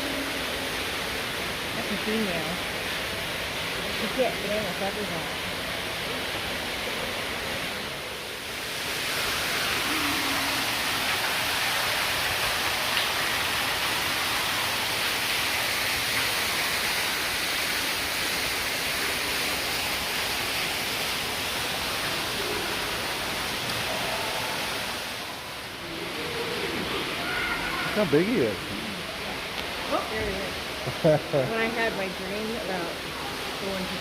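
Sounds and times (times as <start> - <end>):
rushing of falling water: 0.0 - 34.0.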